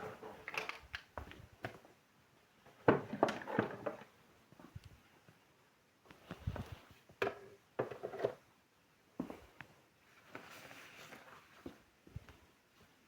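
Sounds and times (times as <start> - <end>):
soft rustle: 4.4 - 7.2, 9.2 - 13.0.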